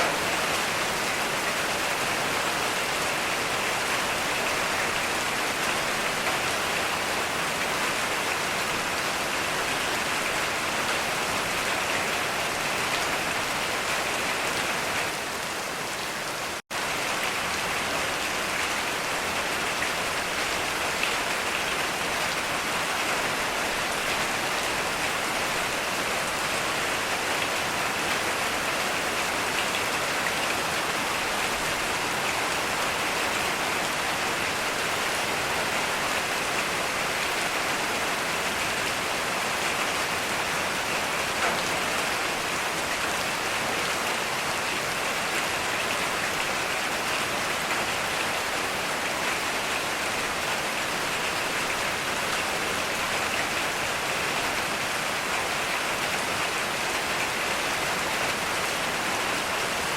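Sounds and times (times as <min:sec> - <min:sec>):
heavy rain falling: 0:00.0 - 0:59.9.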